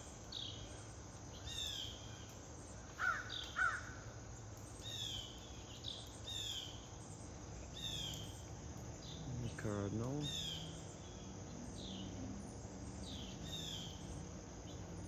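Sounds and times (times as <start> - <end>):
lower bird calls: 9.0 - 11.2.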